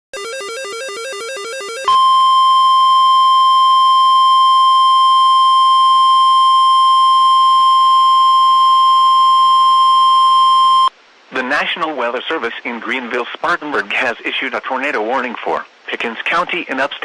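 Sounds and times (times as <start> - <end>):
steady warning alarm tone: 0.2 - 10.9.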